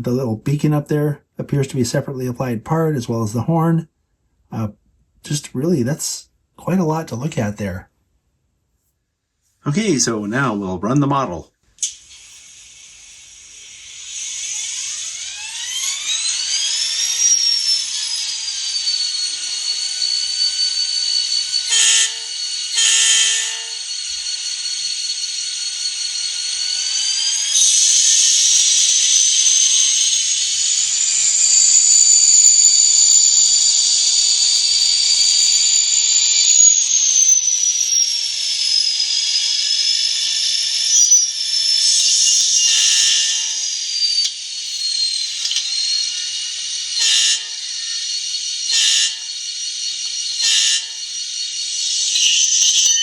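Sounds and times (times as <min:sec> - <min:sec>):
model locomotive diesel engine sound: 0:12.4 - 0:52.8.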